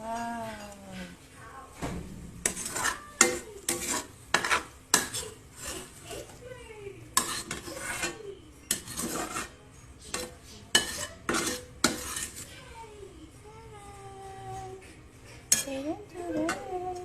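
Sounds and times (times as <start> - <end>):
metal spoon scraping a pot: 2.4 - 6.3, 7.2 - 12.6, 15.4 - 16.8.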